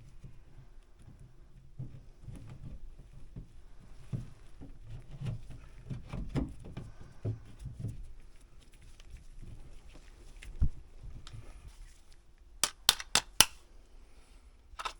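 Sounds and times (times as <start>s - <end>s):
tool knocks and taps: 12.6s - 13.6s.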